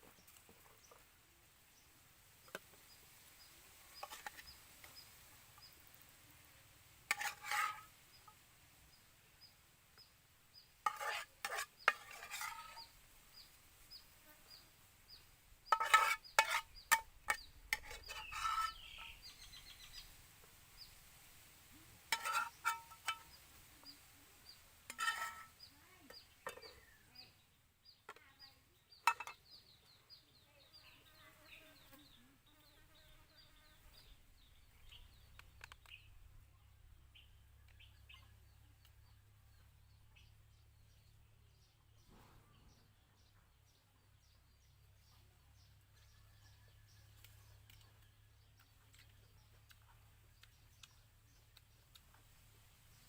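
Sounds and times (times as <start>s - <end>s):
small bird chirping: 1.8s - 6.0s, 7.1s - 21.0s, 21.7s - 53.0s
utensils clinking on dishes: 24.9s - 25.5s.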